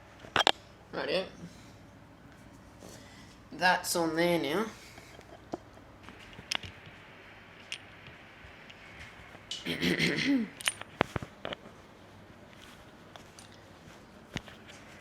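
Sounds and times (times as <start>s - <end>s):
small tools clicking and clinking: 10.6s - 11.1s.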